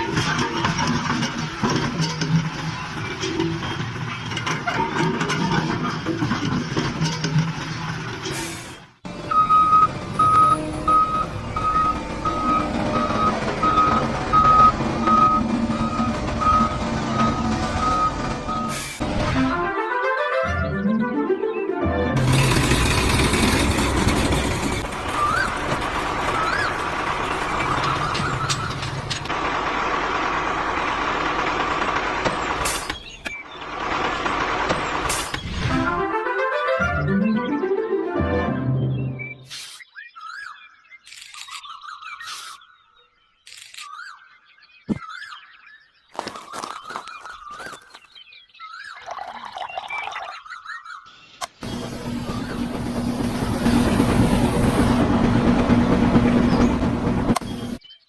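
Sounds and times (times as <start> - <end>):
construction vehicle engine running: 0.0 - 19.7, 22.1 - 36.2, 51.5 - 57.8
reversing alarm beeping: 9.2 - 19.0.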